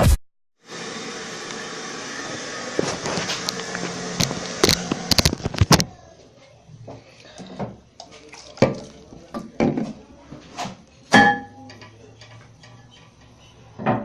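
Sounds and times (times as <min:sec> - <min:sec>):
toilet flushing: 0:00.6 - 0:05.2.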